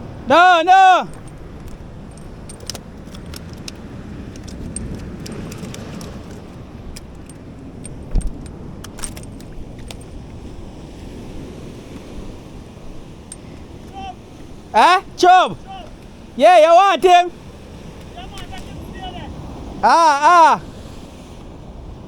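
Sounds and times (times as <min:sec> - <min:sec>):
surf washing against rocks: 0:00.0 - 0:22.0
light metallic clicks and rattles: 0:01.1 - 0:10.4
low thump: 0:08.0 - 0:08.5.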